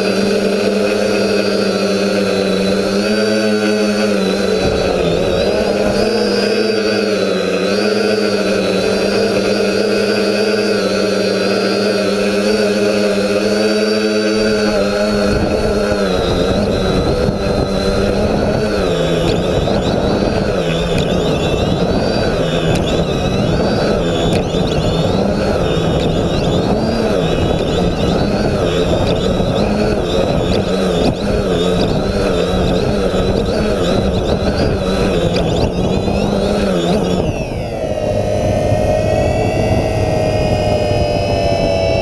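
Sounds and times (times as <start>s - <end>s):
drone motors humming: 0.0s - 42.0s
dense rushing noise: 12.0s - 42.0s.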